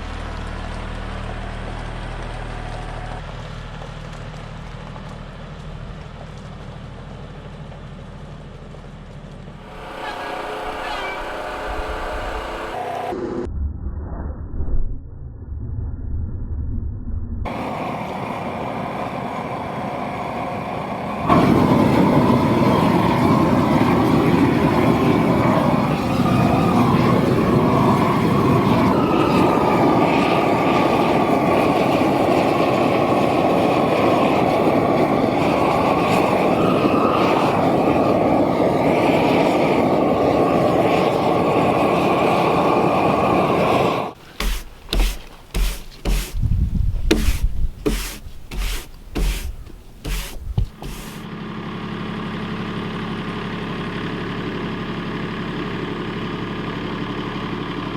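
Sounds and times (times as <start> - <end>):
tractor engine running: 0.0 - 13.5, 42.8 - 57.9.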